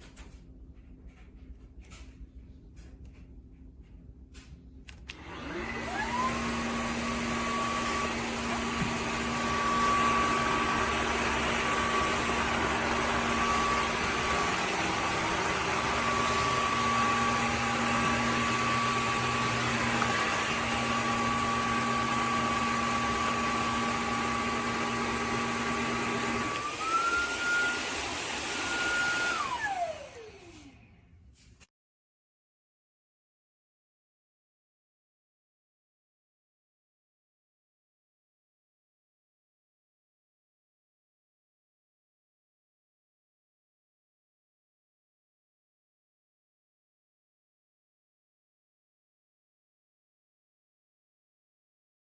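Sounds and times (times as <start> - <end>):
cordless vacuum cleaner whine: 4.9 - 31.0.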